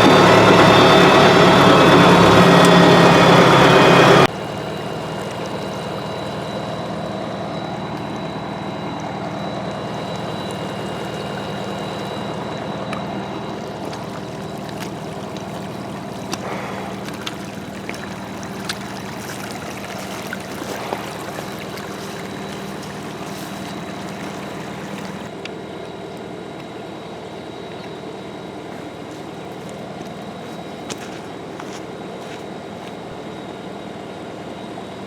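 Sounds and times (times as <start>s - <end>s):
diesel engine running: 0.0s - 25.3s.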